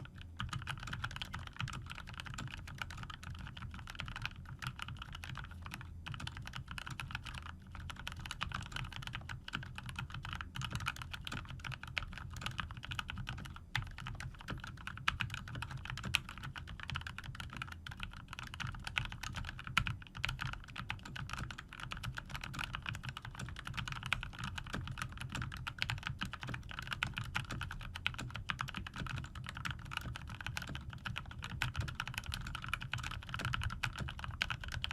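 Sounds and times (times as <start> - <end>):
fast typing on mechanical keyboard: 0.0 - 34.9.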